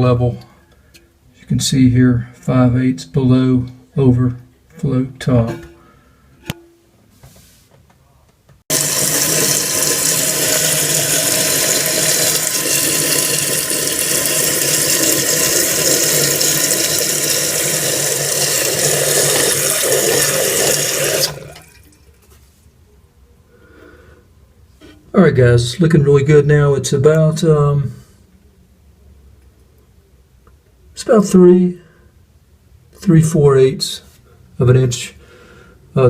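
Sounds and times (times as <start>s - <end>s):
water rushing into toilet tank: 8.7s - 22.2s.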